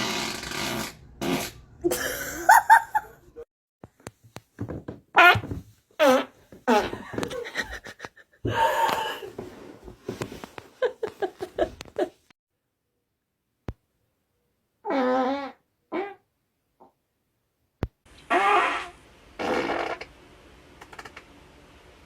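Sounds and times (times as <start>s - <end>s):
farts: 0.0s - 1.6s, 5.2s - 7.2s, 14.8s - 16.2s, 18.3s - 20.2s
laughter: 1.9s - 3.4s, 6.9s - 8.8s, 10.8s - 12.2s.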